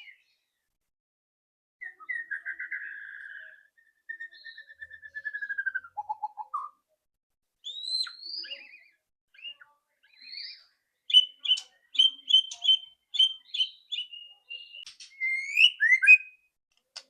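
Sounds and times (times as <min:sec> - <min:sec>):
songbird singing trills and whistles: 0:01.8 - 0:06.8, 0:07.6 - 0:16.5.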